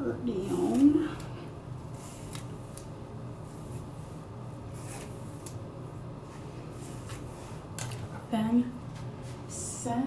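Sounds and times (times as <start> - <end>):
low steady hum: 0.0 - 10.0
comb scratching through wig hair: 3.4 - 5.6.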